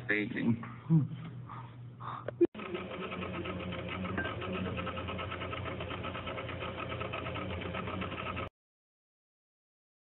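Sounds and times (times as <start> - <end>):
kitchen mixer humming and rattling: 2.6 - 8.5.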